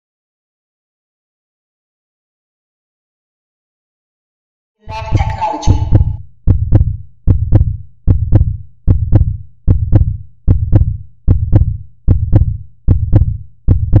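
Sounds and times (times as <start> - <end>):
deep double thump heartbeat: 4.9 - 14.0.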